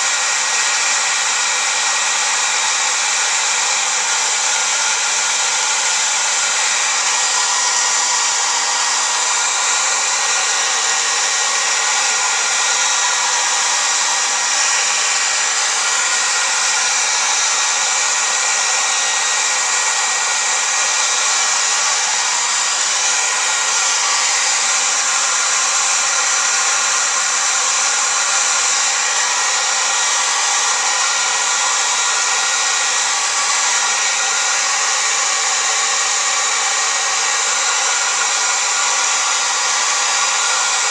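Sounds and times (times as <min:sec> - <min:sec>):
hair dryer running: 0:00.0 - 0:40.9.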